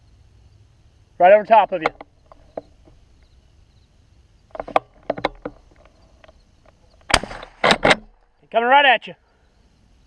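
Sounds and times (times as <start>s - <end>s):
shotgun shots: 7.1s - 8.2s.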